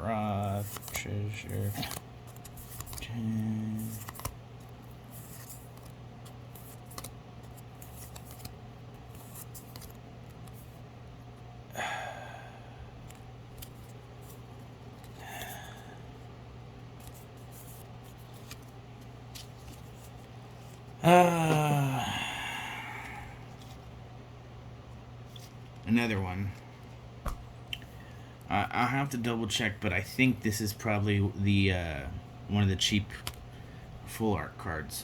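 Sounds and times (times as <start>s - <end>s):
steady low hum: 0.0s - 35.0s
trading cards clicking and rustling: 0.2s - 10.8s, 13.0s - 16.2s, 16.8s - 20.9s, 32.8s - 33.6s
falling vocal groan: 21.0s - 23.3s.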